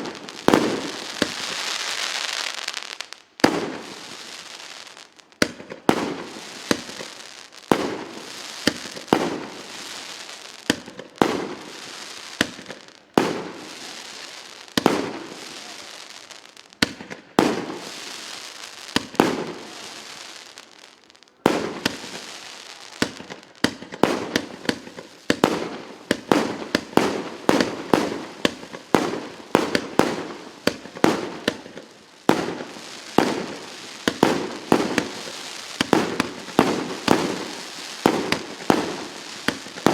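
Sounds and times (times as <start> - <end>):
firework shots banging: 32.3 - 39.9.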